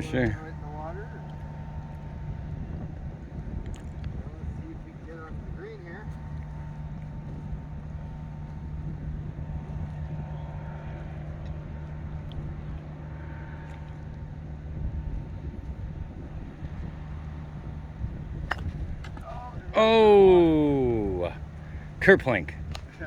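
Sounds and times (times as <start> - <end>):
low engine hum: 0.0 - 23.0
golf club striking ball: 17.1 - 23.0.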